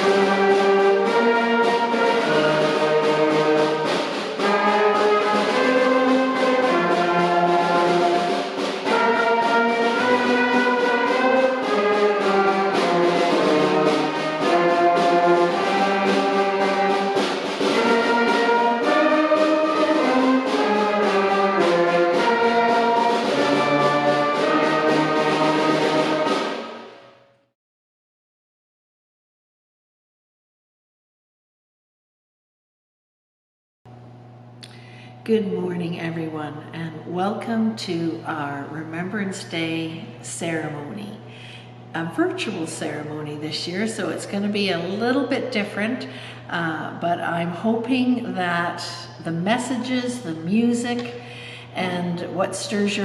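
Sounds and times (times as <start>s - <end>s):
slow brass orchestral music: 0.0s - 27.5s.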